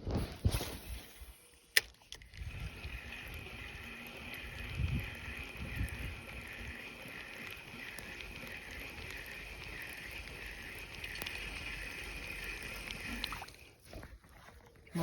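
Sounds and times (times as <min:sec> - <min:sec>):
small clicks: 0:01.7 - 0:13.4.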